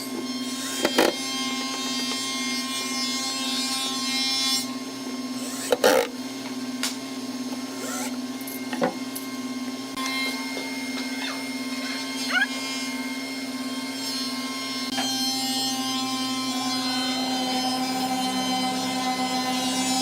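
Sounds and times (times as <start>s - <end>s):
rasping woodworking tool: 0.0s - 4.7s, 5.4s - 6.2s, 7.7s - 8.2s, 14.8s - 20.0s
steady tool hum: 0.0s - 20.0s.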